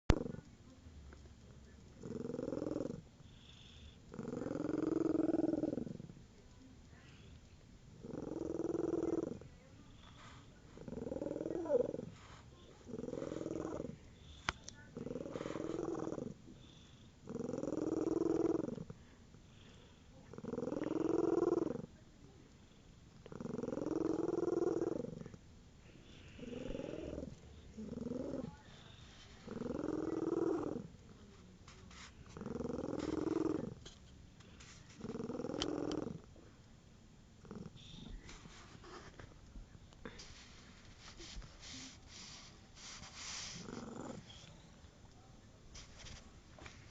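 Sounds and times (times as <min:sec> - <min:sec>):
cat purring: 0:00.0 - 0:36.6, 0:37.3 - 0:46.9.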